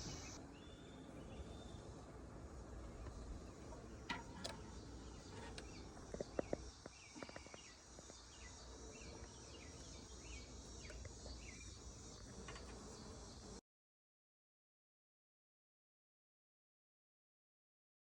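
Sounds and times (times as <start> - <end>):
faint outdoor ambience: 0.0 - 13.6
small bird chirping: 4.4 - 11.8.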